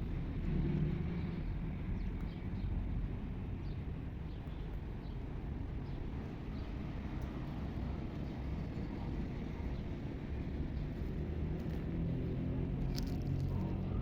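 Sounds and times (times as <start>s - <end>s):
low outdoor rumble: 0.0s - 14.0s.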